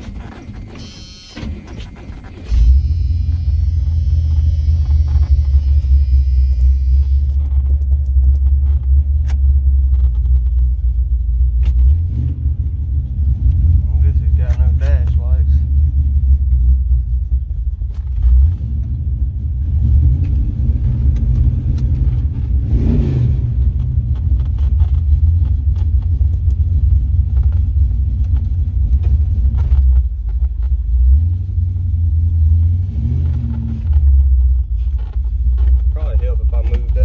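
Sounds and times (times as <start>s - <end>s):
pickup truck engine rumbling: 0.0s - 37.0s.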